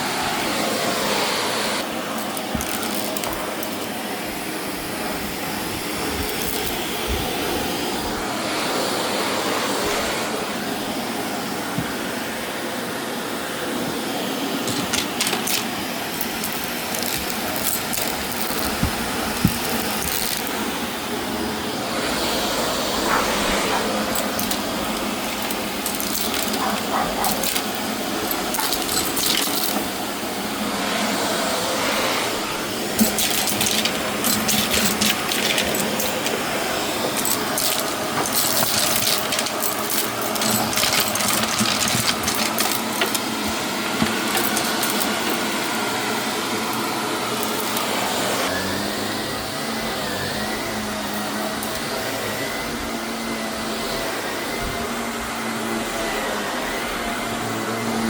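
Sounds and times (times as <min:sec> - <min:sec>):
vacuum cleaner running: 0:00.0 - 0:58.0
debris clicking and rattling: 0:02.1 - 0:04.0, 0:06.1 - 0:07.0, 0:14.6 - 0:20.8, 0:23.1 - 0:30.2, 0:32.9 - 0:45.9, 0:46.6 - 0:47.9, 0:51.1 - 0:51.9.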